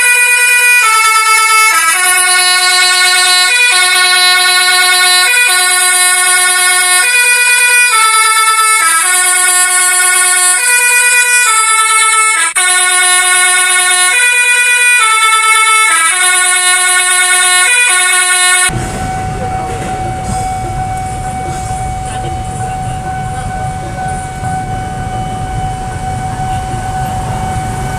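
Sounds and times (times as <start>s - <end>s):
multi-tone horn playing a tune: 0.0s - 27.9s
steady rumble: 18.7s - 27.9s.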